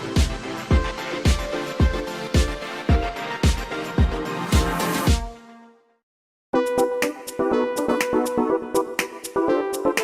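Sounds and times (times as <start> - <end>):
electronic track with quick beat: 0.0 - 5.4, 6.6 - 10.0
background music with beat: 0.0 - 5.5, 6.6 - 10.0.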